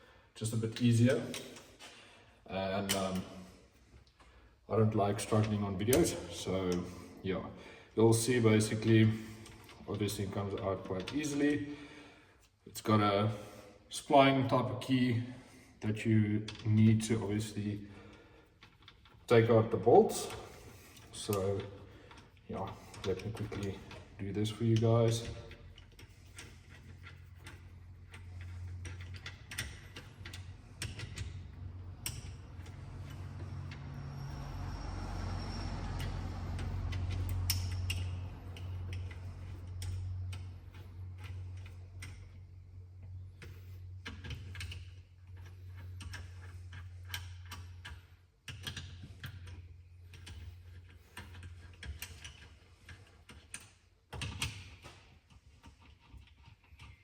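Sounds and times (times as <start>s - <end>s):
hand ratchet clicking: 20.1s - 57.0s
metallic tool clicks and knocks: 35.9s - 40.5s.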